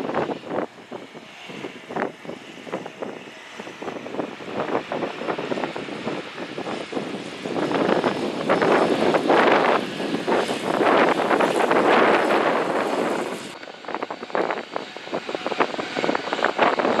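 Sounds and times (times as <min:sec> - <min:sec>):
loud ragged airplane engine: 0:00.0 - 0:17.0.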